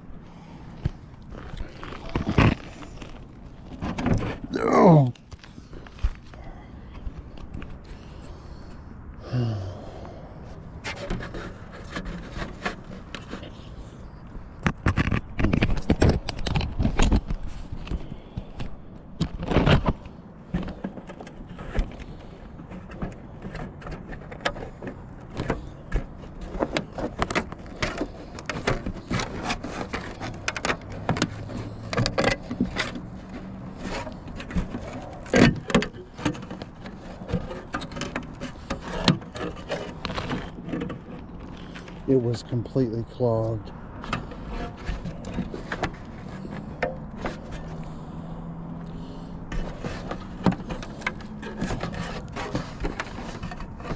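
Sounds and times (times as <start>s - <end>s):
tools scraping and rattling: 10.8s - 14.0s, 14.6s - 53.9s.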